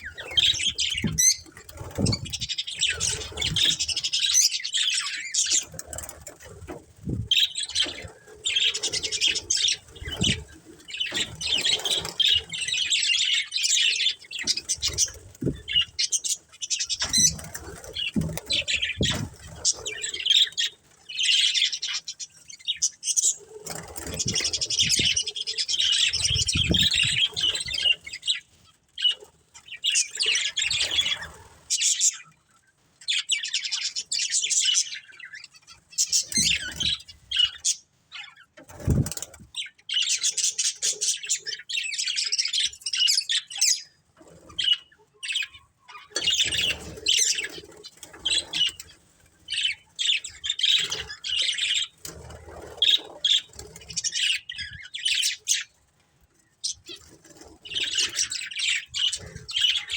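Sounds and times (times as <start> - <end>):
budgerigars chirping: 7.3 - 22.1.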